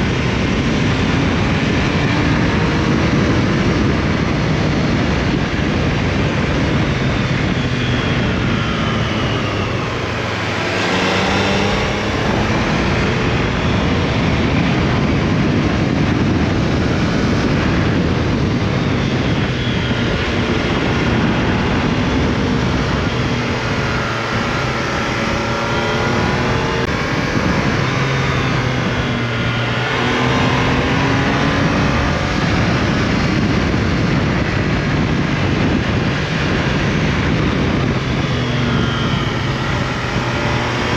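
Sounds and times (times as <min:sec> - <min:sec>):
motorcycle engine accelerating: 0:00.0 - 0:40.9
wind noise: 0:00.0 - 0:40.9.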